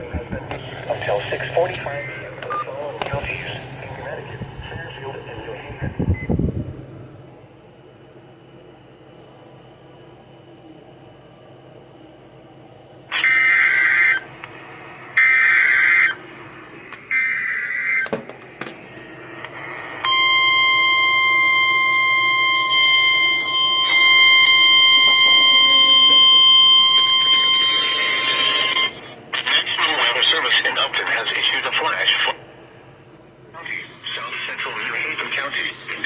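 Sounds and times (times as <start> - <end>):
screechy digital data tones: 13.1 - 14.3, 15.2 - 16.2.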